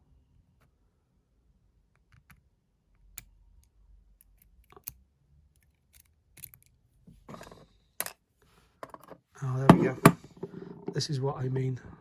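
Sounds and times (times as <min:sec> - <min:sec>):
metallic clicks of lock parts: 0:03.0 - 0:05.0, 0:05.6 - 0:06.8.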